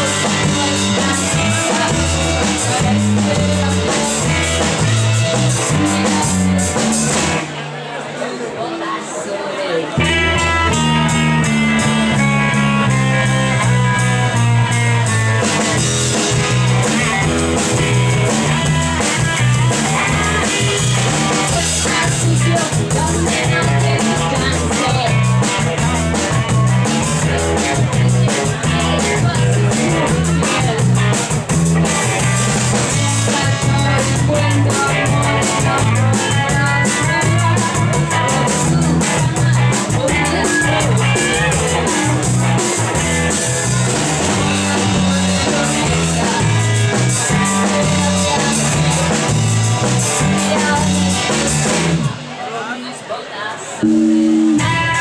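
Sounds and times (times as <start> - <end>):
rock band playing live: 0.0 - 7.8, 10.0 - 55.0.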